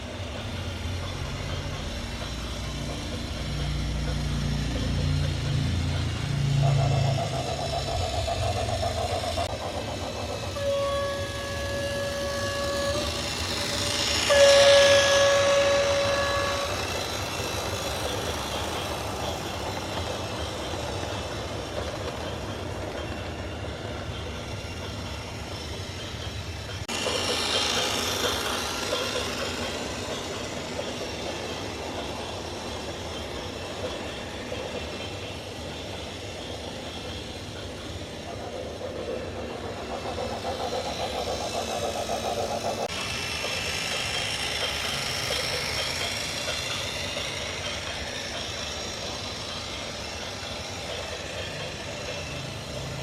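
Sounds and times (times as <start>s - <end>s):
horn blowing steady note: 10.6s - 13.1s, 14.3s - 16.8s.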